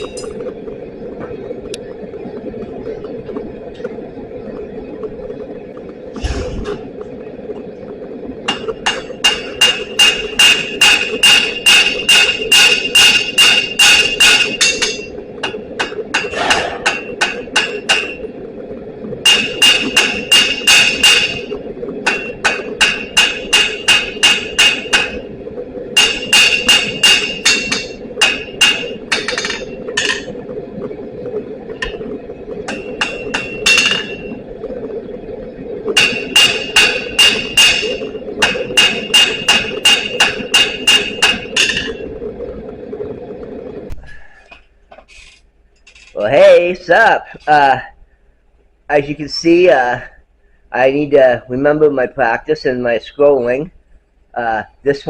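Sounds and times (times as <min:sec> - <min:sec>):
steady low hum: 0:00.0 - 0:55.0
hammer striking steel on anvil: 0:08.5 - 0:18.2, 0:19.3 - 0:21.5, 0:22.1 - 0:25.2, 0:26.0 - 0:30.3, 0:32.7 - 0:34.3, 0:36.0 - 0:42.0.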